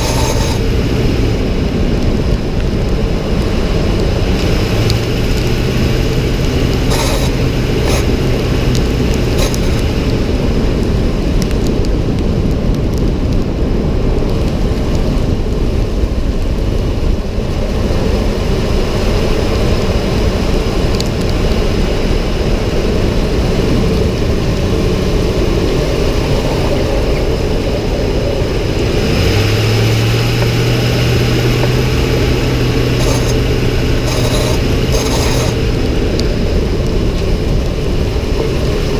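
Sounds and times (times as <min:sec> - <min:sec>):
steady low hum: 0:00.0 - 0:01.5, 0:30.2 - 0:36.2
road and engine noise: 0:00.0 - 0:38.9.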